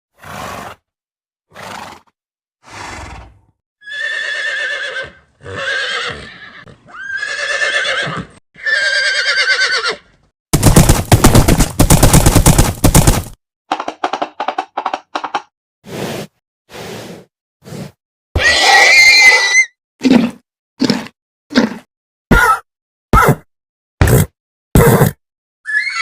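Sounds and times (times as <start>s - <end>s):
horse whinnying: 2.7s - 10.1s, 18.4s - 19.7s, 24.9s - 26.0s
short hoof clops: 10.6s - 13.4s
rapid hoof clatter: 10.6s - 15.4s.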